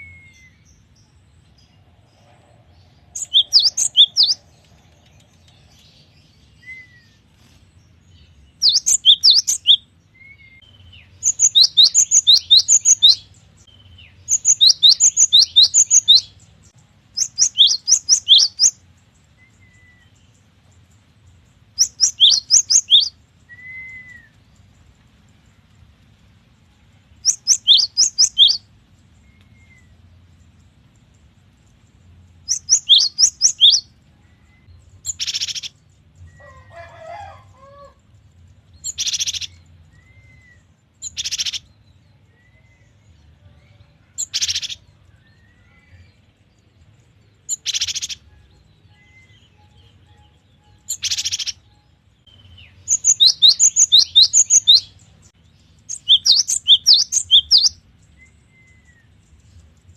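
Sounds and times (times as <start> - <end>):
bird high sweeping chirps: 3.1 - 4.4, 8.6 - 9.8, 11.2 - 13.3, 14.2 - 16.3, 17.2 - 18.8, 21.8 - 24.3, 27.2 - 28.6, 32.5 - 33.9, 35.0 - 35.8, 38.8 - 41.6, 44.2 - 44.8, 47.5 - 48.2, 50.8 - 51.7, 52.5 - 55.0, 55.9 - 57.8.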